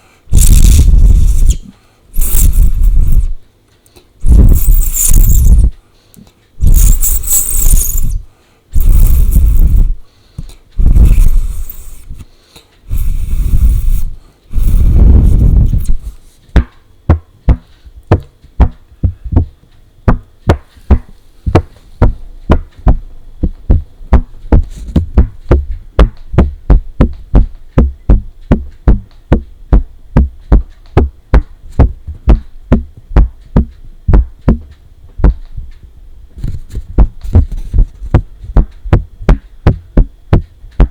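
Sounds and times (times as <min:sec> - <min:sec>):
tapping with deep thud: 0:16.6 - 0:35.5.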